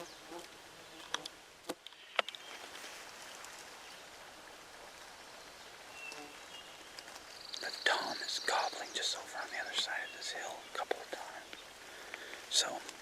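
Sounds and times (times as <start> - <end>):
faint woodland background: 0.0 - 13.0.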